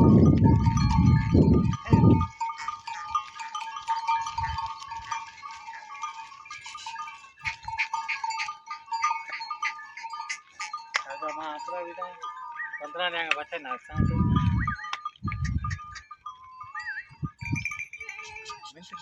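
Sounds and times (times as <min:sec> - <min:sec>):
goats and sheep bleating: 0:00.7 - 0:12.4.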